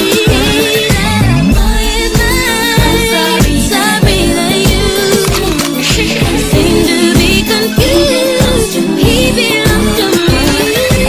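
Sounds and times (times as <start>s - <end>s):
deep bass drum hits falling in pitch: 1.3s - 3.8s.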